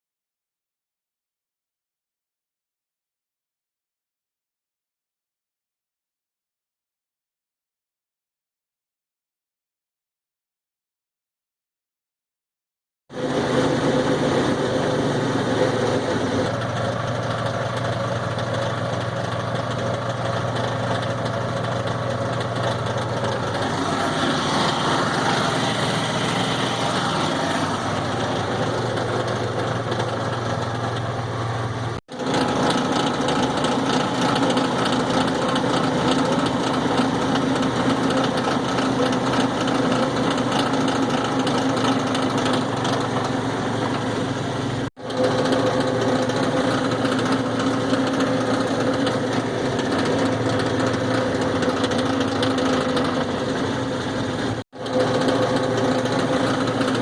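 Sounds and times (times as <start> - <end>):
utility vehicle droning: 13.1 - 57.0.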